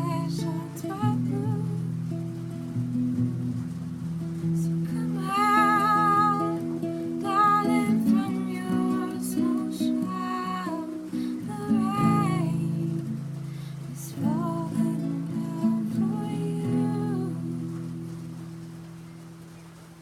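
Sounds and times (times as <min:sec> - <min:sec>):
woman singing with vibrato: 0:00.0 - 0:02.1, 0:04.6 - 0:18.2
strummed acoustic guitar: 0:00.0 - 0:19.6.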